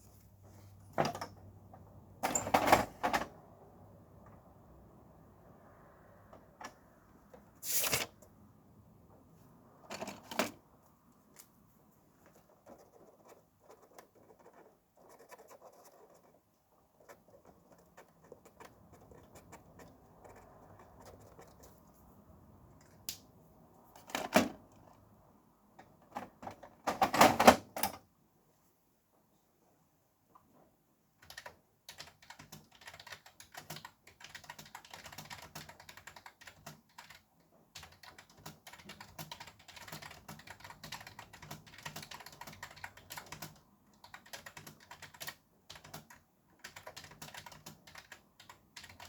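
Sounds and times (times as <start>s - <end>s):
faint traffic hiss: 3.1s - 14.1s.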